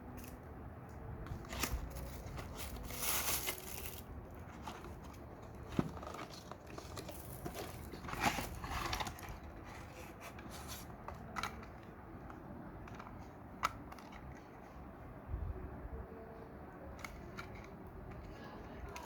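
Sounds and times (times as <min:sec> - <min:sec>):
packaging rustling: 0:01.4 - 0:11.6.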